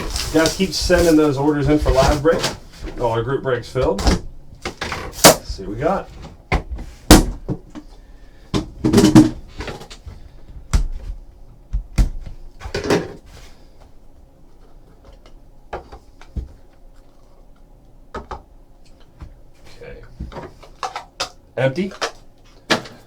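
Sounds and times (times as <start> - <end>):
scraping and rustling: 0.0 - 3.9.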